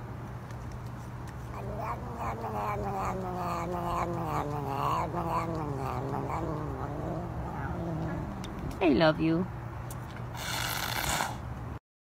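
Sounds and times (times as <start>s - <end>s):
cat yowling: 1.5s - 8.4s.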